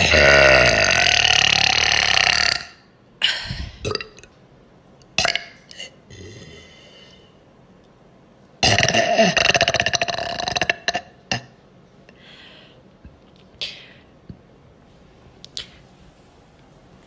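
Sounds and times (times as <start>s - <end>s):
girl burping: 0.0s - 2.8s, 3.8s - 4.3s, 8.6s - 11.6s.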